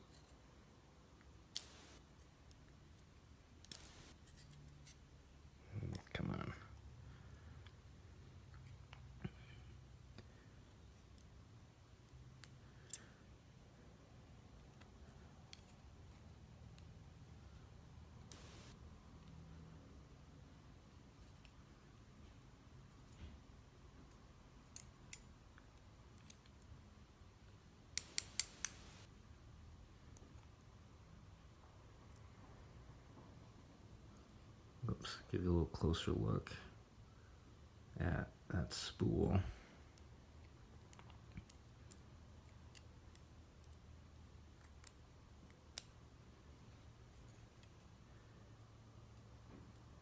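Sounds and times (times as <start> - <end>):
small metal clicks of lock parts: 1.2 - 5.0, 12.1 - 13.2, 24.0 - 26.8, 28.0 - 29.0, 40.0 - 43.9, 44.5 - 46.0
low steady hum: 4.9 - 50.0
tweezers clicking on lock pins: 28.0 - 29.0.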